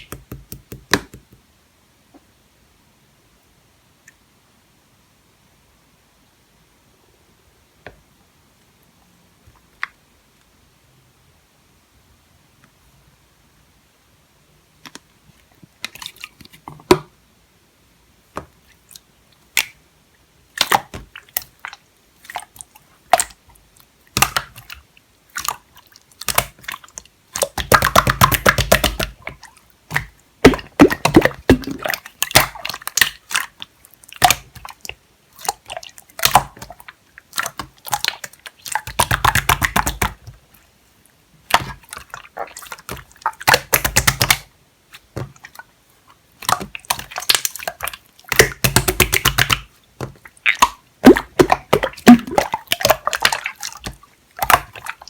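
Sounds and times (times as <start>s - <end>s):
slime squelching and popping: 20.5s - 23.4s, 24.1s - 40.4s, 41.4s - 45.6s, 46.3s - 55.0s.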